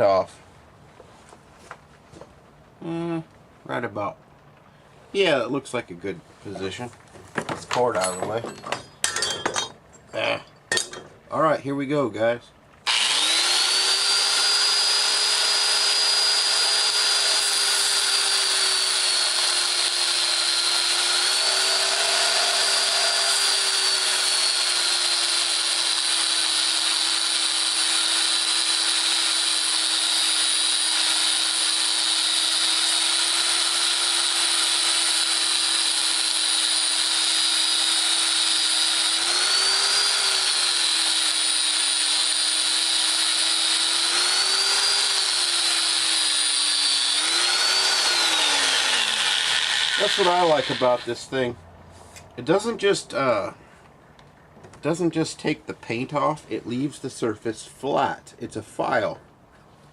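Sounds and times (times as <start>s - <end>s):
belt sander sanding metal: 12.9s - 51.2s.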